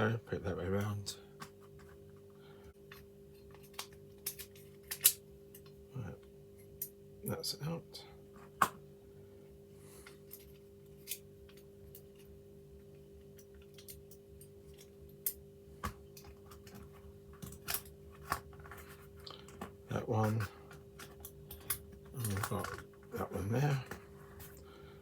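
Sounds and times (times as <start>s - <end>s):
steady background hum: 0.0s - 25.0s
metal parts clicking: 3.5s - 5.7s.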